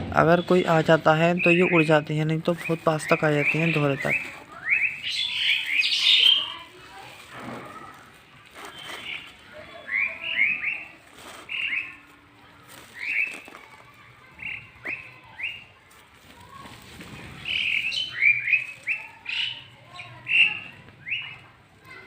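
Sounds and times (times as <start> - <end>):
small birds chirping: 0.2 - 22.0.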